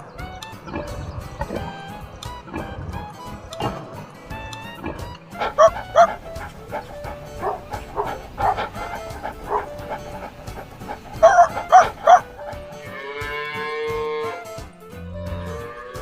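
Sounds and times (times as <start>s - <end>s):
background music: 0.0s - 16.0s
dog barking: 5.4s - 12.7s
long drawn-out call: 5.4s - 14.4s.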